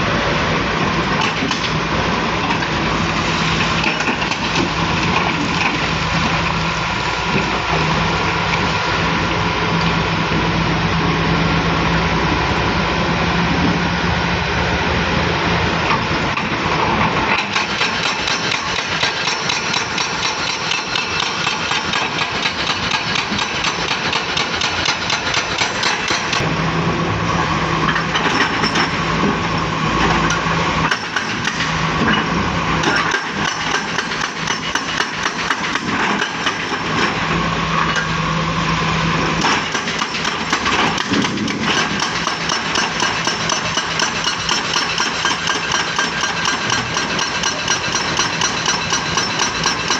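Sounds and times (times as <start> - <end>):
excavator diesel engine running: 0.0 - 49.9
fast metallic clatter: 39.4 - 49.9.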